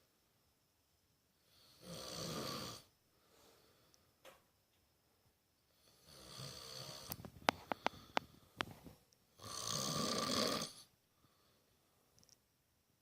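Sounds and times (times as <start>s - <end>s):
man snoring: 1.5s - 2.9s, 5.8s - 7.2s, 9.4s - 10.9s.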